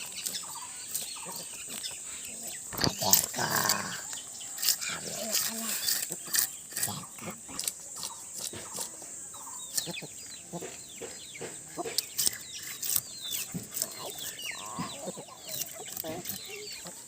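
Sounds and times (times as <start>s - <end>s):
chicks peeping: 0.0s - 3.4s, 4.0s - 17.0s
scraping fish scales: 0.0s - 9.0s, 11.8s - 14.5s
chickens clucking: 0.0s - 17.0s.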